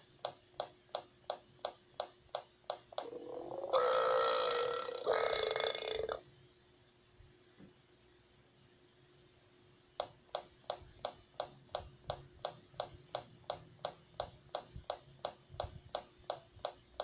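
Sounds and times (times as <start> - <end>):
faint steady hum: 0.0 - 17.0
mechanical ticking: 10.0 - 17.0.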